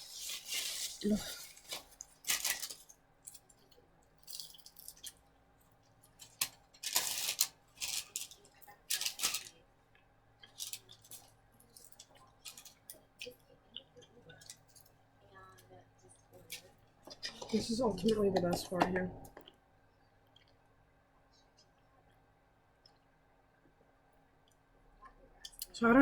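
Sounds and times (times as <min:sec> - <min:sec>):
packaging and paper rustling: 0:00.0 - 0:02.9, 0:06.3 - 0:09.6.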